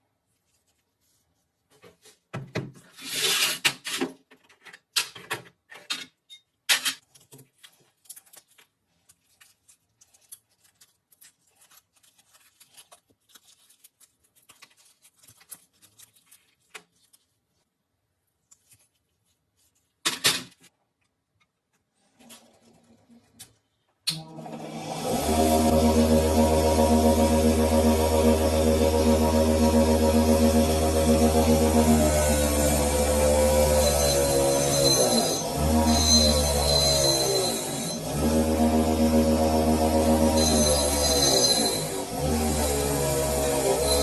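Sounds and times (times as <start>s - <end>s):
metal rasping: 29.8s - 38.1s.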